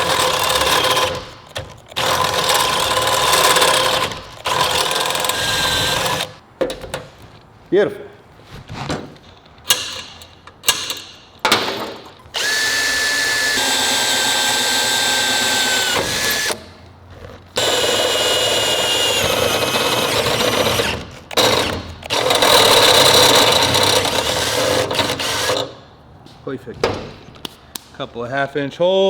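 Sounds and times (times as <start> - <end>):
electric drill boring through steel: 0.0 - 6.4, 12.3 - 16.6, 17.6 - 25.7.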